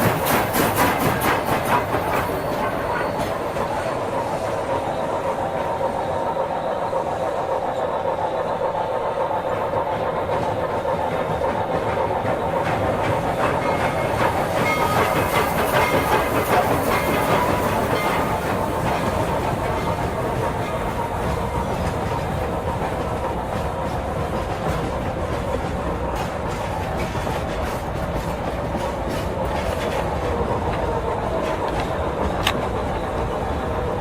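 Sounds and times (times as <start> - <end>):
steam hiss: 0.0 - 34.0
train wheels clattering: 0.0 - 34.0.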